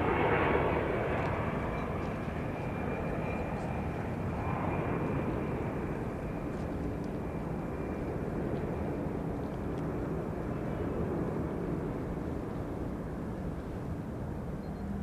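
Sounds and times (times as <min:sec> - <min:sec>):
jet engines roaring: 0:00.0 - 0:15.0.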